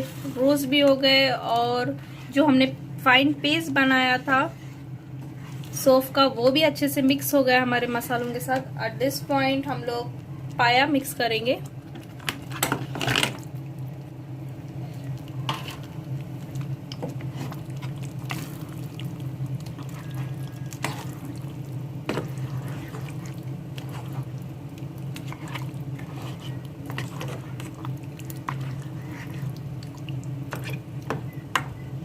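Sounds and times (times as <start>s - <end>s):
wet mixing in a pot: 0.0s - 9.6s, 10.4s - 32.0s
steady low hum: 0.0s - 32.0s.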